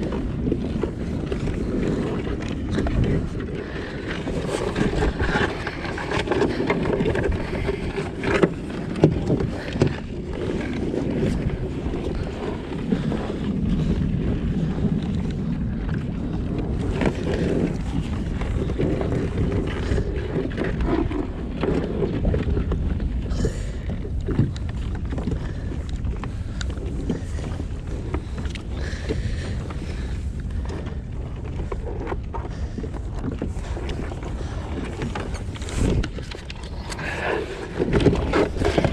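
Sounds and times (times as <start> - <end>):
water sloshing around kayak: 0.0 - 38.9
wind rumbling on microphone: 0.0 - 38.9.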